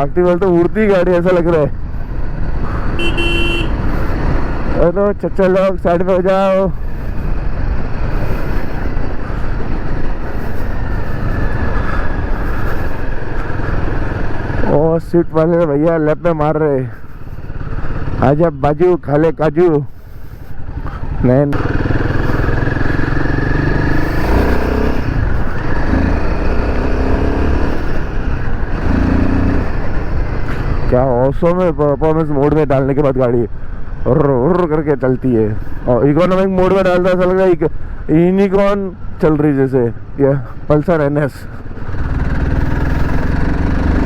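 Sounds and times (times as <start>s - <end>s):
wind and road noise: 0.0s - 44.0s
motorcycle engine running: 1.7s - 5.0s, 6.2s - 14.9s, 20.0s - 31.0s, 41.5s - 44.0s.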